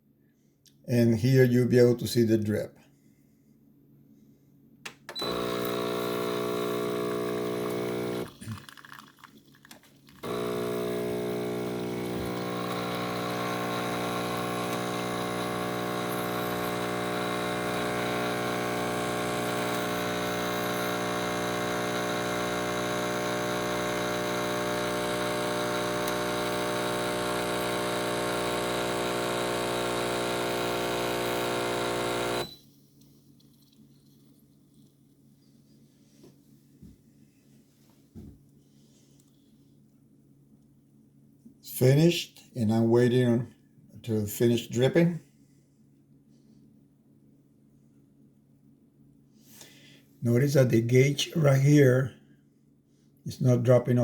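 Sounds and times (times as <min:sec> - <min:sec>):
espresso machine pump buzzing: 0:05.1 - 0:08.8, 0:10.2 - 0:32.6.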